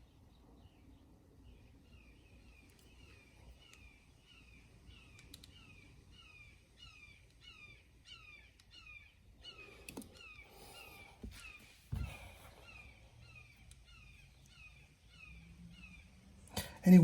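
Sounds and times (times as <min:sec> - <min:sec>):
faint clicks: 0:05.1 - 0:05.6.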